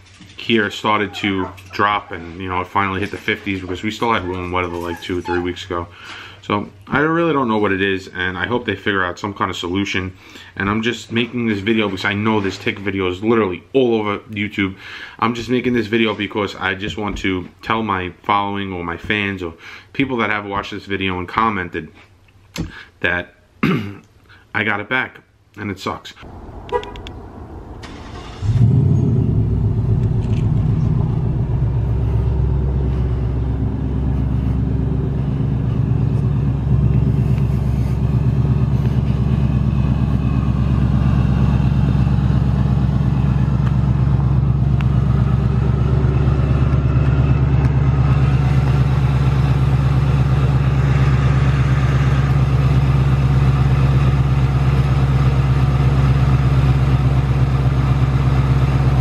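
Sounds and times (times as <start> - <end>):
car engine starting and idling: 26.2 - 59.0.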